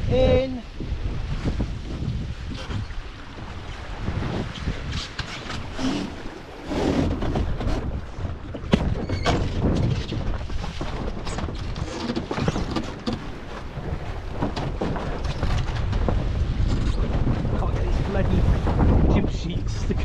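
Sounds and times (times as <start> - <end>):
wind buffeting microphone: 0.0 - 20.0
boat fittings knocking and rattling: 4.9 - 17.4.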